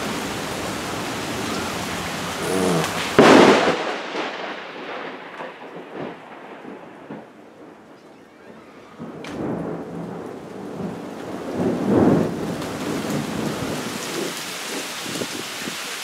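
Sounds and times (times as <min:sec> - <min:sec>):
heavy rain hissing: 0:00.0 - 0:05.3, 0:07.6 - 0:16.0
thunder crack and rumble: 0:02.8 - 0:15.4.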